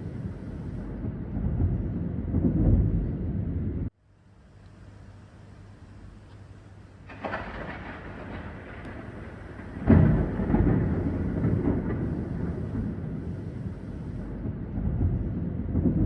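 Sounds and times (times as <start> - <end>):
thunder clap: 0.0 - 3.9, 7.0 - 16.0
thunder crack: 0.0 - 3.9, 7.0 - 16.0
thunder rumble: 0.0 - 3.9, 5.9 - 16.0.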